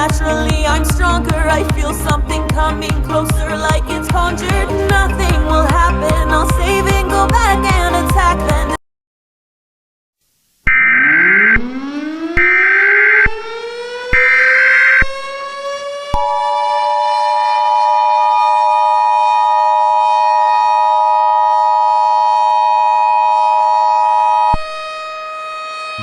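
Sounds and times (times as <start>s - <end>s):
civil defense siren wailing: 10.9s - 26.0s.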